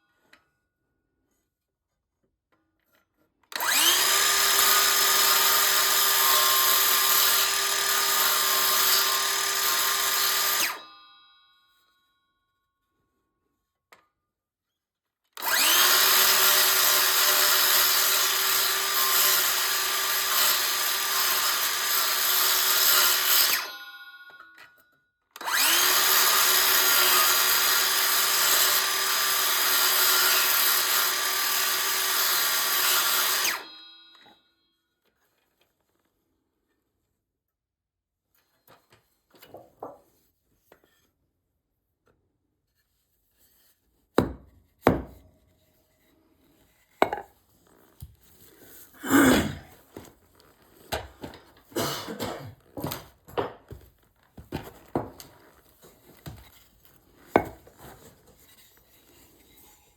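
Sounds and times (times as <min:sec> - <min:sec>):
power tool motor whine: 0:03.5 - 0:10.8, 0:15.4 - 0:23.8, 0:25.4 - 0:33.9.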